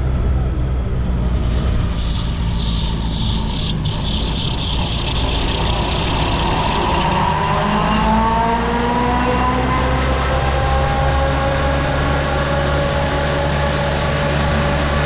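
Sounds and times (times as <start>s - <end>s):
aircraft engine and propeller: 0.1s - 15.0s
air rushing across microphone: 1.1s - 7.0s.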